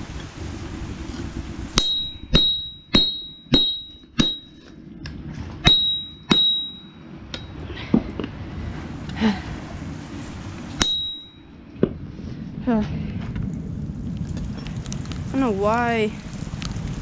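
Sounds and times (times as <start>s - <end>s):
hammer striking metal on anvil: 1.8s - 4.7s, 5.6s - 7.6s, 10.8s - 11.4s.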